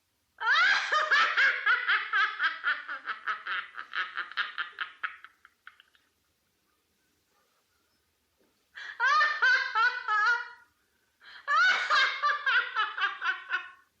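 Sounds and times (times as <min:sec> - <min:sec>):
woman laughing: 0:00.4 - 0:06.1, 0:08.8 - 0:10.7, 0:11.3 - 0:13.8.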